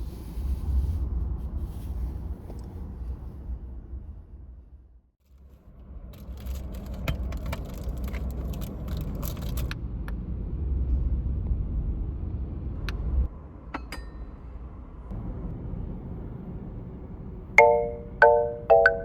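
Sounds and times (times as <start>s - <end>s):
objects clinking and scraping: 6.2s - 9.7s.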